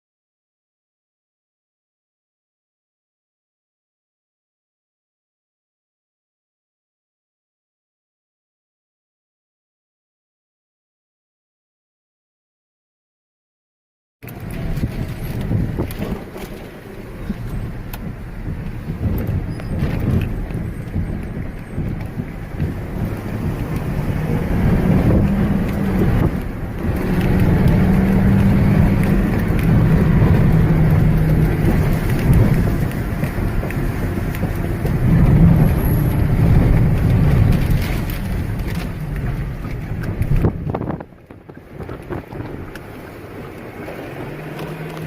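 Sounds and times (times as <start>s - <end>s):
low vehicle hum: 14.2s - 45.0s
storm wind and rain: 14.2s - 45.0s.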